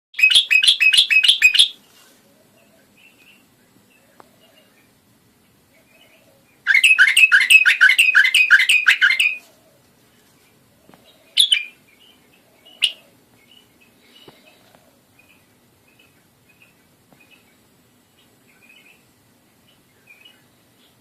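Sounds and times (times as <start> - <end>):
bulbul chirping: 0.2 - 1.8, 5.9 - 9.4, 11.0 - 14.3.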